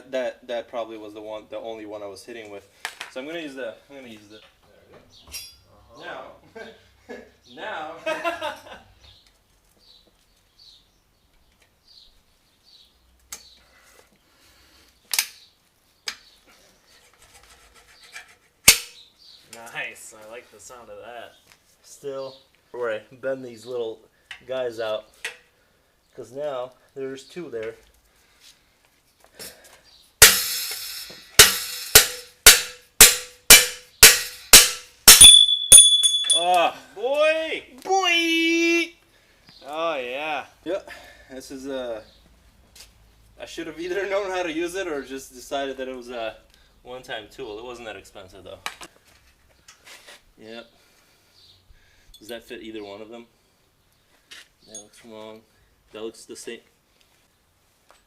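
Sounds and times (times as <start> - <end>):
hammer blows on metal: 30.2 - 36.6.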